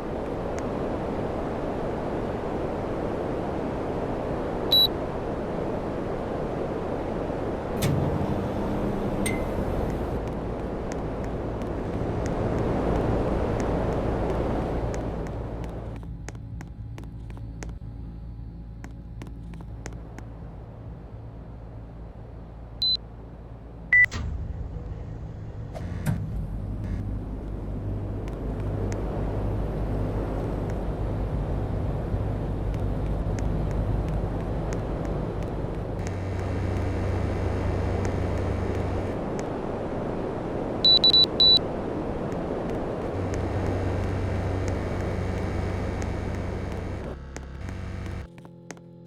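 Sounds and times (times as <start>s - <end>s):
steady hum: 0.0s - 49.0s
air conditioner beeps: 4.7s - 5.0s, 7.8s - 10.2s, 40.8s - 41.6s.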